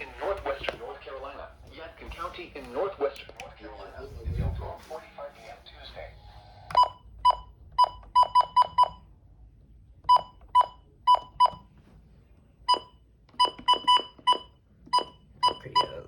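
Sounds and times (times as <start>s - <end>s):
short electronic beeps: 12.7s - 16.0s.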